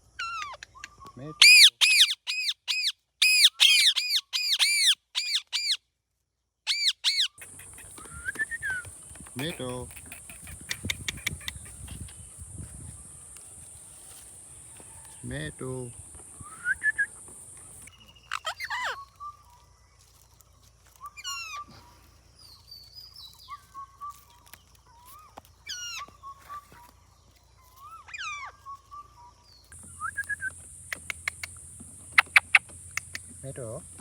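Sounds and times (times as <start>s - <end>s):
parrot whistling: 1.4s - 5.8s, 16.4s - 17.2s
parrot clicking: 7.4s - 12.2s, 30.9s - 33.3s.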